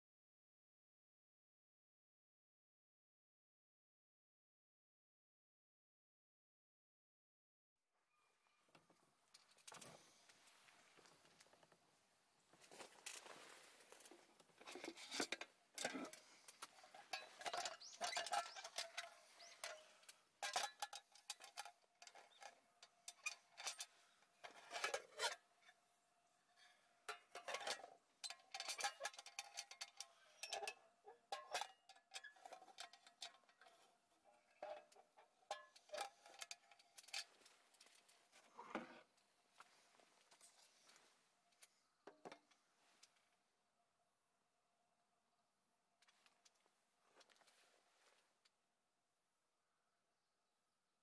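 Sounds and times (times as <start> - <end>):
metal cookware clinking: 14.7 - 25.4, 27.1 - 33.9.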